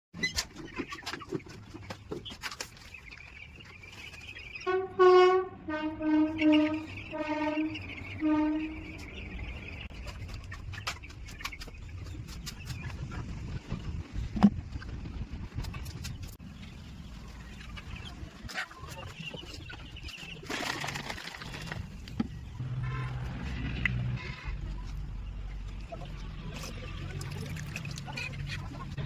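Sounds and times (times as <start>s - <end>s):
chicks peeping: 0.2s - 5.2s, 5.9s - 29.0s
vehicle horn honking: 4.6s - 8.9s, 22.6s - 23.4s.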